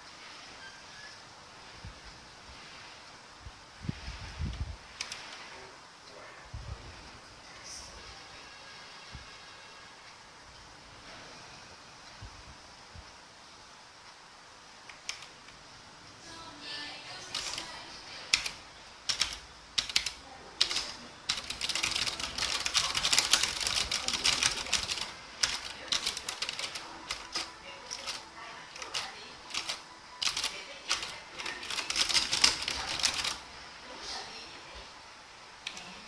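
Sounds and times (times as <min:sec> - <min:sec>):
mechanical keyboard typing: 0:05.0 - 0:05.3, 0:14.9 - 0:15.4, 0:17.3 - 0:17.7, 0:18.3 - 0:33.4.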